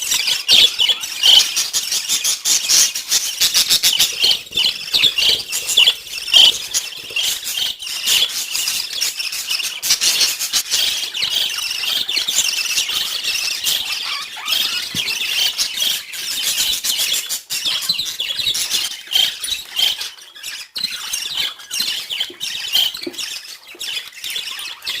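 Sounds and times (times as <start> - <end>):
budgerigars chirping and chattering: 0.0 - 25.0.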